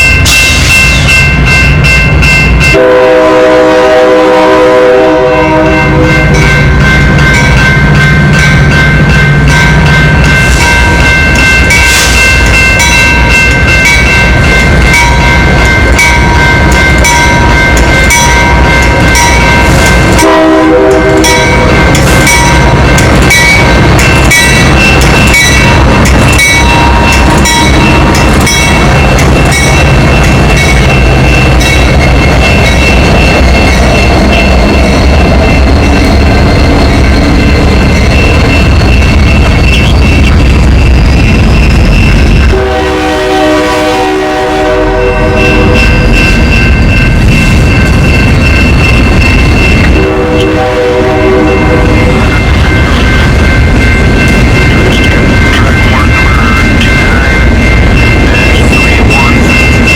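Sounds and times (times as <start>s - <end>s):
train engine drone: 0.0s - 59.9s
locomotive air horn: 2.8s - 6.4s, 20.2s - 21.8s, 42.5s - 45.8s, 50.0s - 52.0s.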